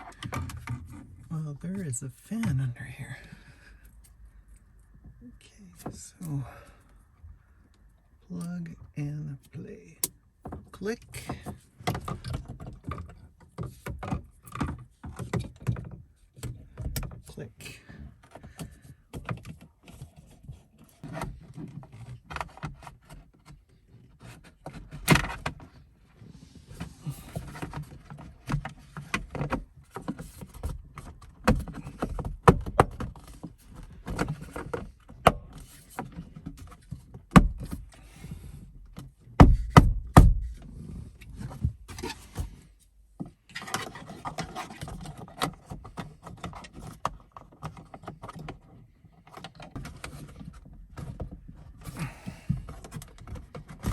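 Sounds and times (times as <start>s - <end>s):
plastic parts clicking and scraping: 0.0s - 1.8s, 18.1s - 42.6s, 43.2s - 53.9s
sharp knocks: 39.4s - 40.6s.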